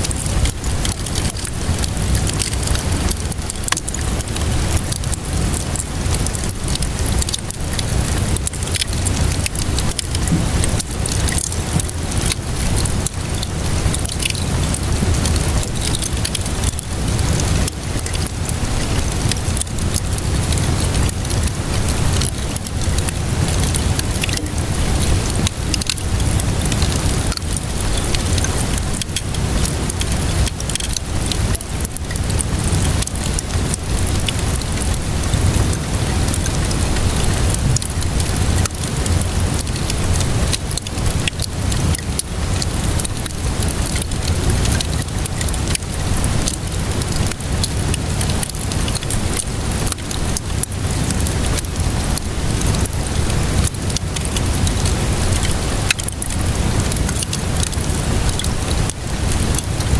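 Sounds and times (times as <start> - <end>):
rain hissing: 0.0 - 59.9
wood fire crackling and popping: 0.0 - 59.9
low rumble: 23.0 - 27.2.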